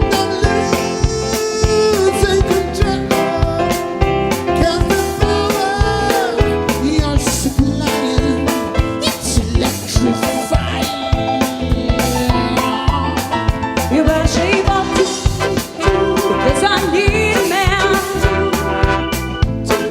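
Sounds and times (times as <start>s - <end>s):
pop song with drum beat: 0.0s - 19.9s.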